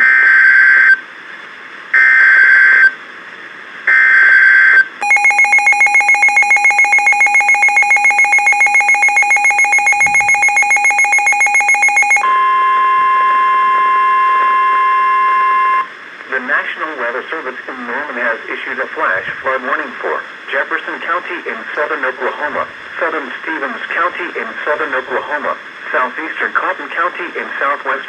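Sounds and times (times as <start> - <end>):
steady warning alarm tone: 3.9 - 15.8
radio alarm beeping rapidly: 4.5 - 12.4
screechy digital data tones: 5.0 - 12.2.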